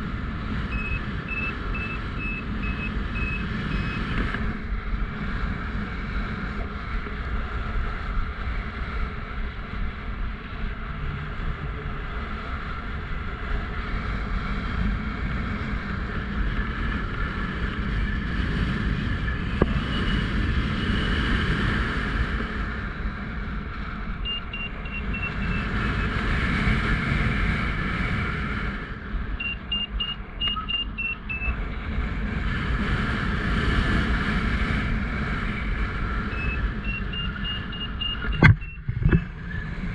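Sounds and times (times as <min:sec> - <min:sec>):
wind buffeting microphone: 0:00.0 - 0:39.9
variometer quick high beeps: 0:00.7 - 0:04.0, 0:24.2 - 0:25.7, 0:29.4 - 0:31.5, 0:36.3 - 0:39.1.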